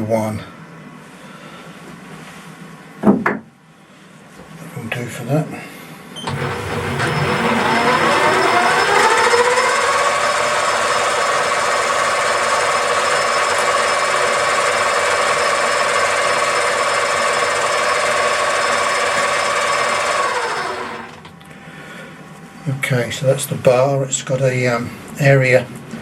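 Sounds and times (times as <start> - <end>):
lathe motor whine: 6.2 - 21.3.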